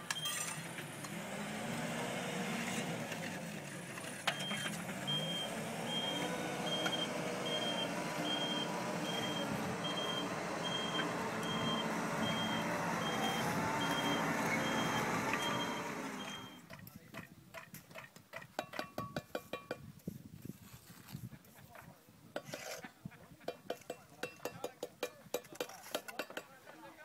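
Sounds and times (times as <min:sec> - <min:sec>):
construction vehicle engine running: 0:00.0 - 0:16.8
back-up alarm beeping: 0:04.3 - 0:16.7.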